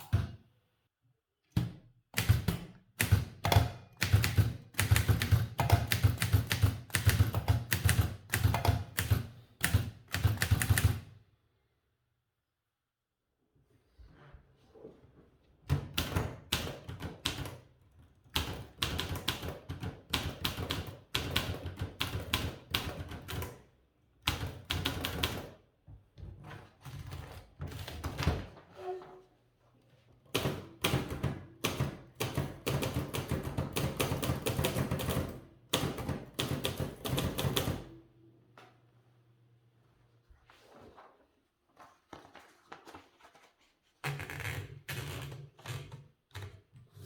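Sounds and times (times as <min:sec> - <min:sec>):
typewriter keystroke clacks: 0:02.2 - 0:11.1.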